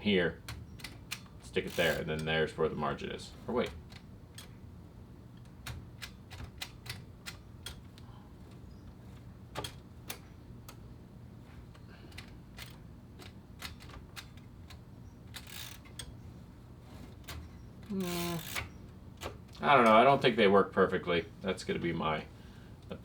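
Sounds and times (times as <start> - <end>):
typewriter mechanism clicks: 0.4 - 2.4, 3.3 - 4.7, 5.3 - 10.8, 11.7 - 16.2, 16.9 - 20.0.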